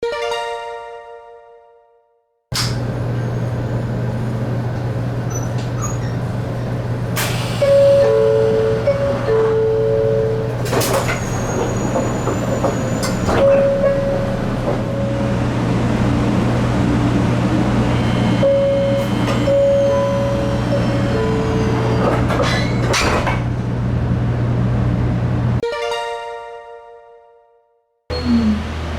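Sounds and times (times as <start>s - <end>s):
train hum: 2.5s - 25.6s, 28.1s - 28.9s
sliding doors knocking: 8.0s - 15.0s.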